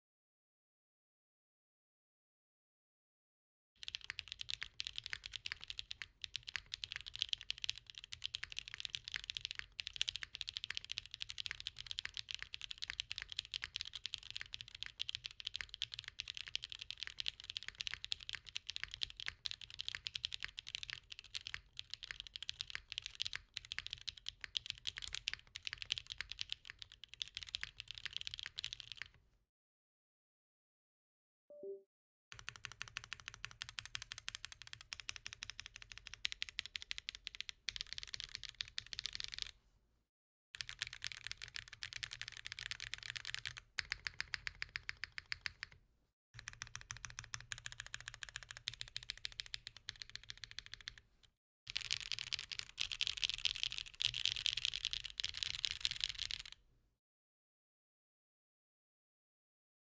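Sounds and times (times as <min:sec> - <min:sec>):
fast mechanical keyboard typing: 0:03.8 - 0:29.1, 0:32.4 - 0:39.5, 0:40.6 - 0:45.8, 0:46.4 - 0:51.0, 0:51.7 - 0:56.6.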